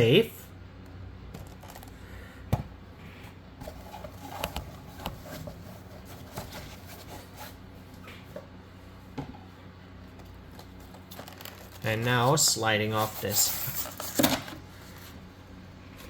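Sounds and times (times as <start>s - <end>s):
hands handling plastic packaging: 10.2s - 15.0s.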